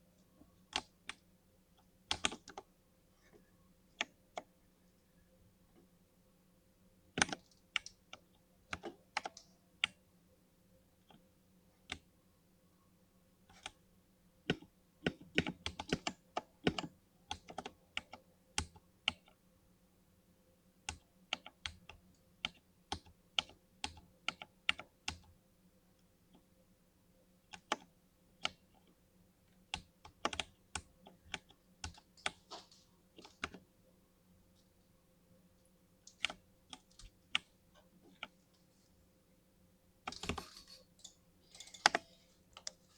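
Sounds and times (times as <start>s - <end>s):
mechanical keyboard keystroke clicks: 40.1s - 42.8s.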